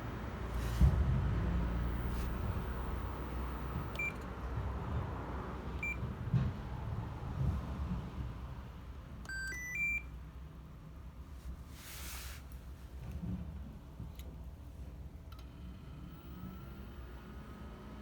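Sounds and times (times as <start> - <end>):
soft bumps: 0.4 - 3.9
microwave short high beeps: 9.3 - 10.1.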